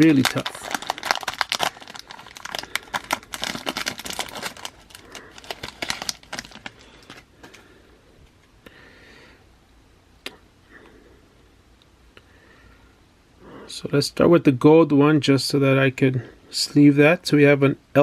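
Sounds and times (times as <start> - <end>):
card pack wrapper crinkling and tearing: 0.0 - 7.6.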